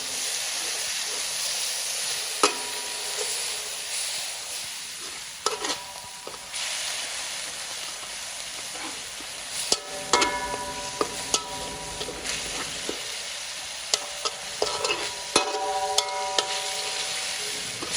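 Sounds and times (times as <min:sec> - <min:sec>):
food sizzling in hot oil: 0:00.0 - 0:17.9
utensil clinking against pan: 0:02.4 - 0:03.4, 0:05.4 - 0:06.5, 0:09.7 - 0:13.2, 0:13.9 - 0:17.9.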